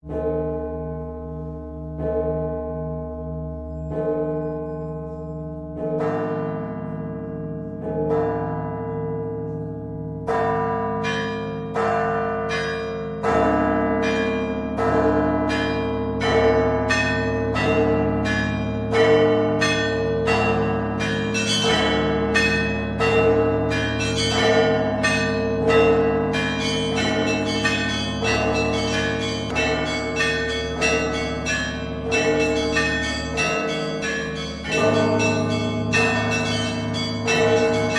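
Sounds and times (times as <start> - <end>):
low church bells ringing: 0.0 - 37.9
small high bells pealing: 19.5 - 37.9.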